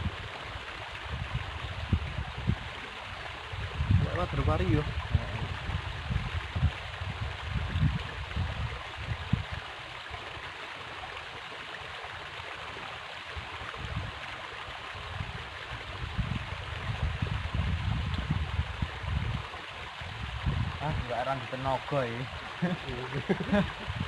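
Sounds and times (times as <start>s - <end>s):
river water flowing: 8.8s - 24.0s.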